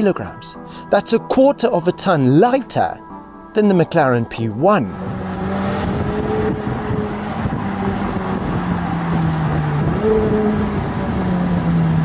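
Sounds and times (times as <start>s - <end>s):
car engine at low revs: 4.8s - 12.0s.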